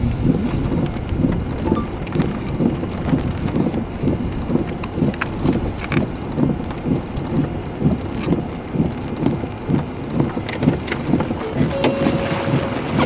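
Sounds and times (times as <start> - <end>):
rain: 0.0 - 13.0
wind gusts rumbling: 0.0 - 13.0
thin steady tone: 1.7 - 2.0.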